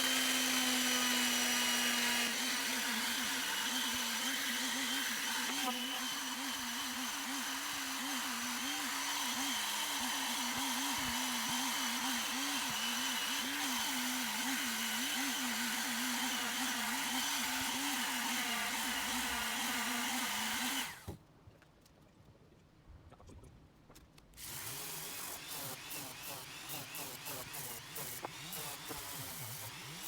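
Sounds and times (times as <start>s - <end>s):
woodworking power tool humming: 0.0s - 21.2s, 24.4s - 30.0s.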